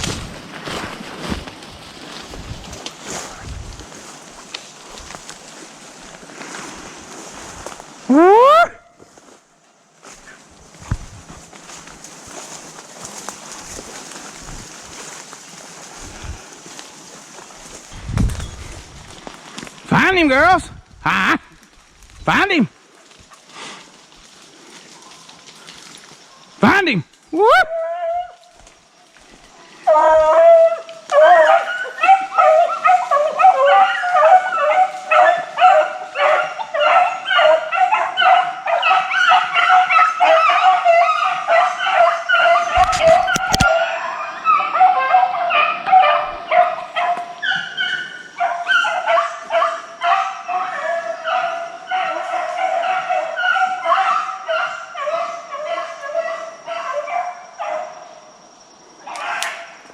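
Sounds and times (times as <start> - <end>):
hounds baying: 26.6 - 28.6, 29.6 - 58.2.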